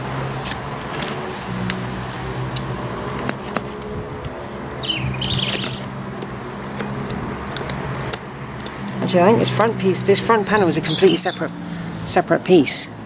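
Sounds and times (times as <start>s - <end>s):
plastic cover clicking and rustling: 3.2s - 4.0s
birds chirping: 4.0s - 7.8s, 9.0s - 12.9s.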